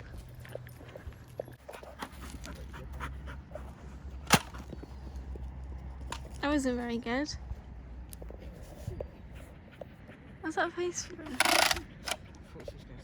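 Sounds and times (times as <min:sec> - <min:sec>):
dog panting: 0:00.0 - 0:05.0, 0:08.2 - 0:13.0.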